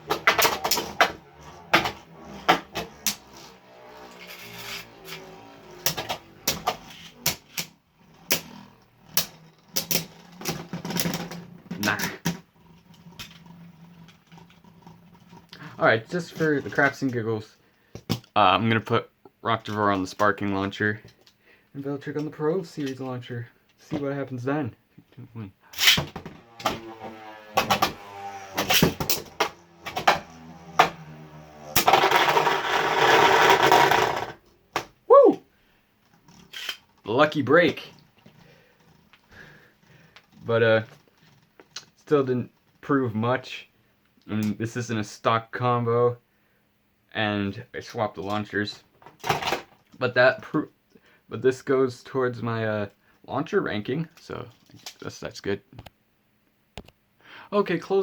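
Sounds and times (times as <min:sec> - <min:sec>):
spinning tops whirring: 0:00.0 - 0:15.5, 0:25.8 - 0:34.4.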